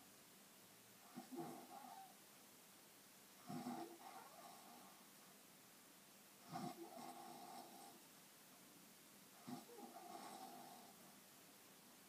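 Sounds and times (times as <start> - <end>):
faint room hiss: 0.0 - 12.0
snoring breath: 3.4 - 5.0, 6.4 - 8.0, 9.4 - 11.2.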